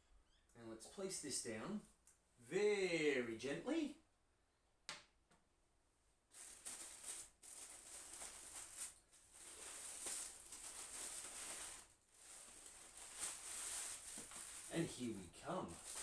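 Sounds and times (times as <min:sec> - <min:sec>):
packing material crinkling: 0:06.3 - 0:16.0.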